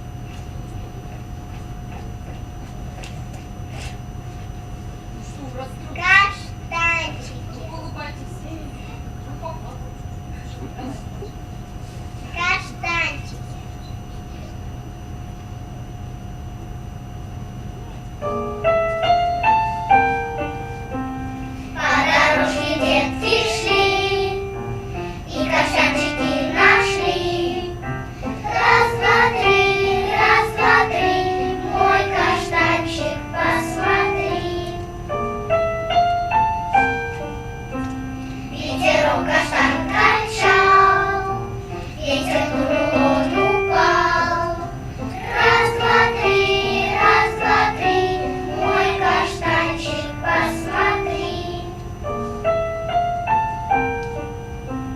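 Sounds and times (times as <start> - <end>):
piano accompaniment: 17.8 - 54.9
children's choir singing: 21.7 - 24.6, 25.3 - 34.9, 38.5 - 51.8.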